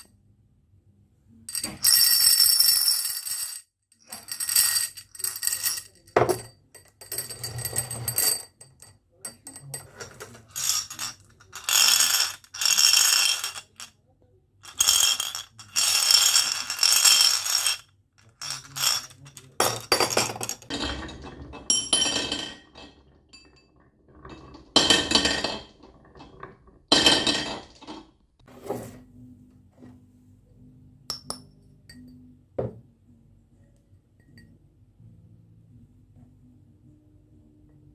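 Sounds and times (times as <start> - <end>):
marbles rattling down a track: 1.8 - 6.3, 10.1 - 13.9, 14.6 - 20.7.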